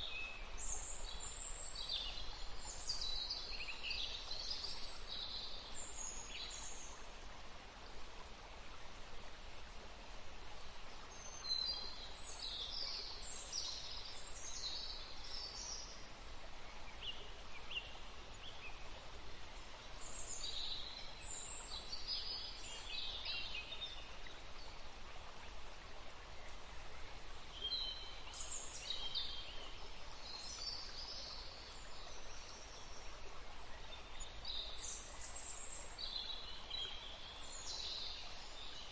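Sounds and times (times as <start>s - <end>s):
background hiss: 0.0s - 38.9s.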